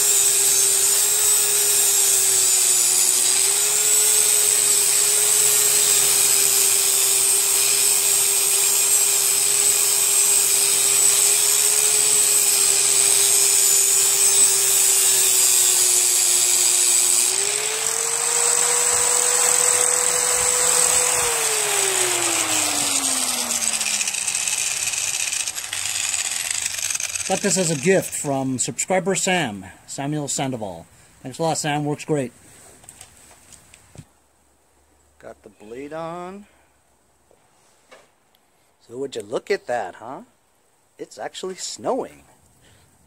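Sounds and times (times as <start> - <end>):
motor winding down: 0.0 - 28.3
power tool grinding steel: 0.0 - 28.4.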